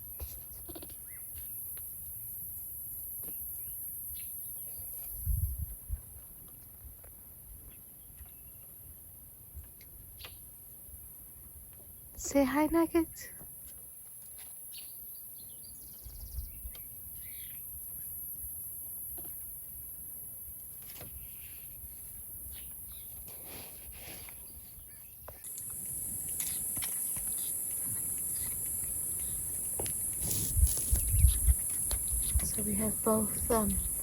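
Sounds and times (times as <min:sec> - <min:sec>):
high-pitched insect drone: 0:25.5 - 0:34.0.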